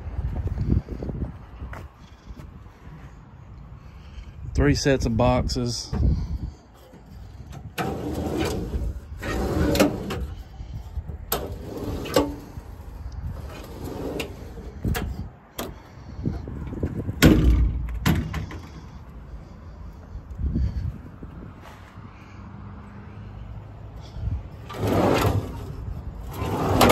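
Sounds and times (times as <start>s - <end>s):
metal doors banging: 17.2s - 18.6s.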